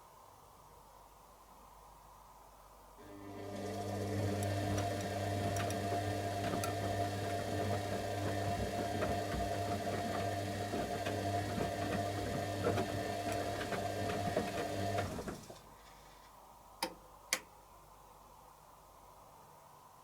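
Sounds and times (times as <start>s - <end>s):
washing machine motor humming: 3.0s - 15.6s.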